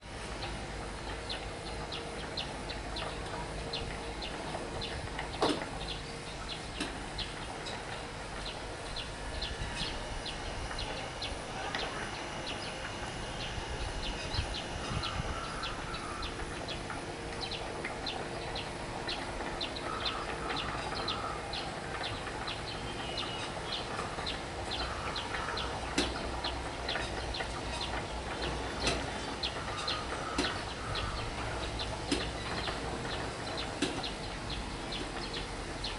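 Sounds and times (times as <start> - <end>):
low background hum: 0.0 - 35.9
small birds chirping: 0.4 - 35.9
lower bird call: 8.5 - 25.8.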